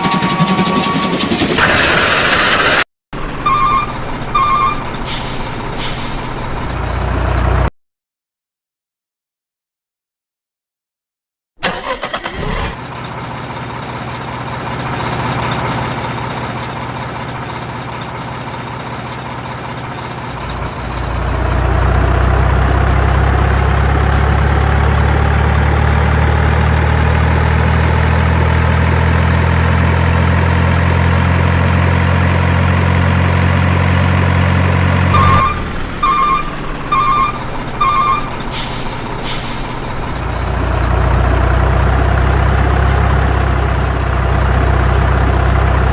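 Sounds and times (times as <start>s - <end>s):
truck engine running: 0.0s - 7.7s, 11.6s - 45.9s
short reversing beeps: 35.2s - 38.4s
air-brake hisses: 38.5s - 39.8s.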